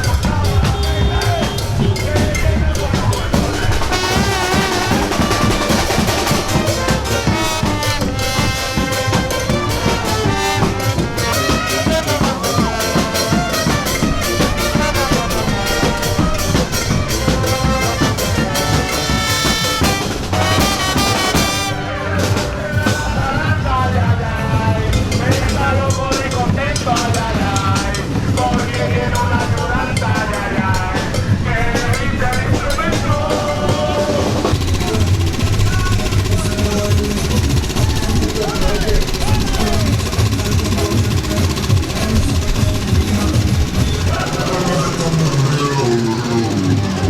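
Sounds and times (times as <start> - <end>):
brass and drums music: 0.0 - 47.0.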